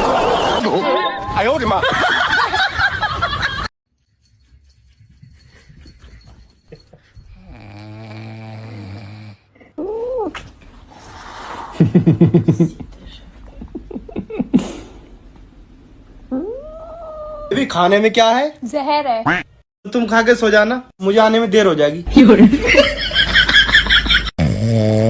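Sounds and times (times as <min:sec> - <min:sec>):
pet snoring drone: 0:07.4 - 0:09.6, 0:24.4 - 0:25.0.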